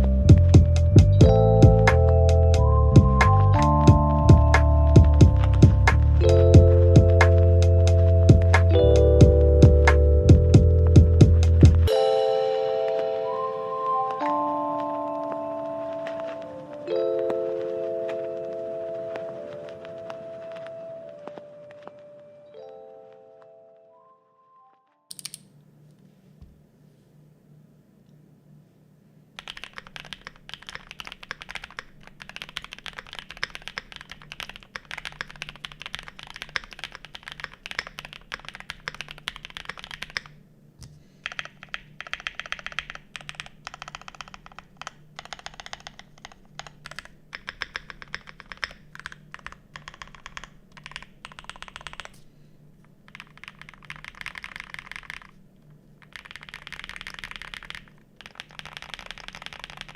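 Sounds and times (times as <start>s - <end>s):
mechanical keyboard key clacks: 25.1s - 25.5s, 41.2s - 52.1s, 56.0s - 59.9s.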